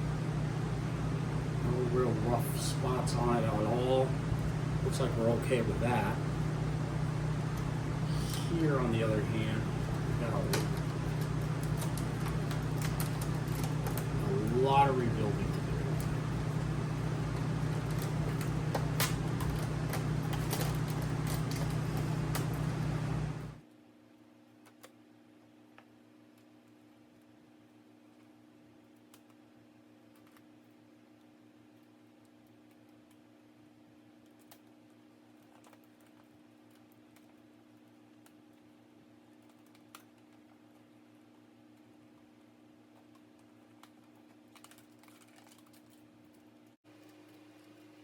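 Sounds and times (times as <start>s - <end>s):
fan humming: 0.0s - 23.6s
faint clicks and taps: 5.8s - 23.6s.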